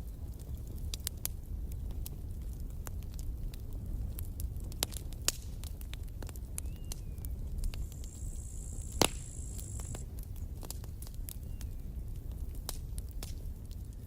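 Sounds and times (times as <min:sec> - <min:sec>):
campfire crackling: 0:00.0 - 0:14.0
thin high whine: 0:07.7 - 0:10.0.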